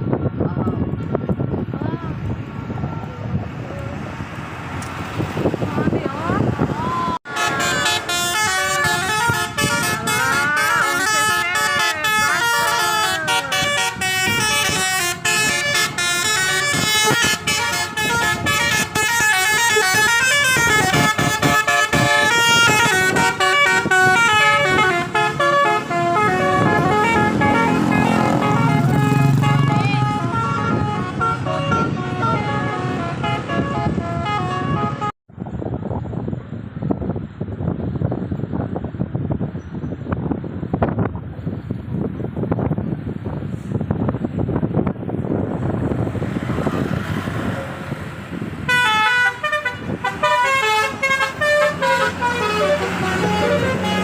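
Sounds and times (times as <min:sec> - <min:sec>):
vehicle engine noise: 0:00.0 - 0:54.0
musical air horn tune: 0:07.3 - 0:35.2, 0:48.7 - 0:54.0.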